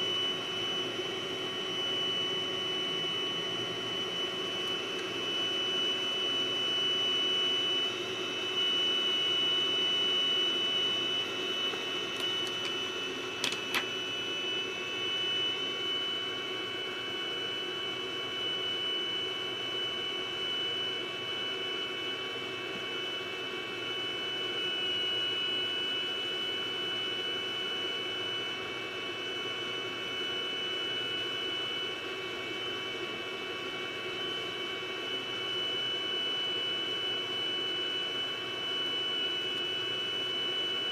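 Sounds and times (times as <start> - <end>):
computer cooling fan: 0.0 - 40.9
high-pitched electrical whine: 0.0 - 40.9.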